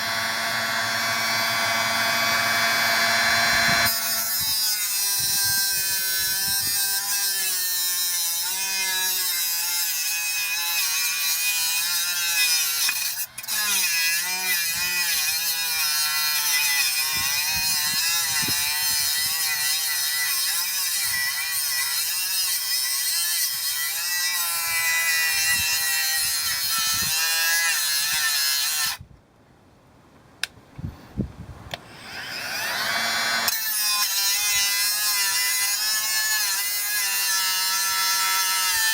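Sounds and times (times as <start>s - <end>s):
angle grinder motor whine: 0.0s - 6.7s, 31.9s - 34.1s.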